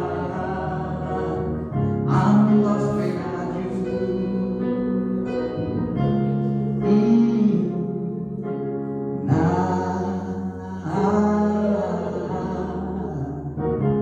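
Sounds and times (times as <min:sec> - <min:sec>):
voices singing long notes: 0:00.0 - 0:06.1
sustained keyboard chords: 0:00.0 - 0:14.0.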